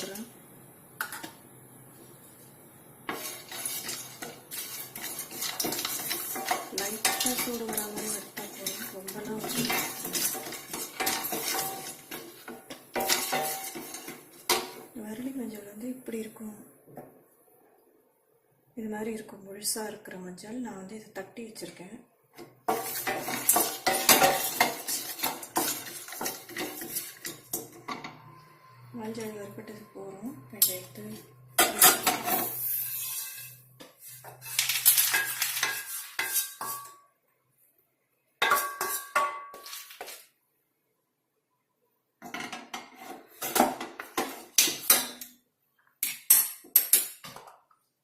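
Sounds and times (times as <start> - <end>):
turmeric pieces rattling in a pan: 3.1 - 14.9, 22.7 - 27.6.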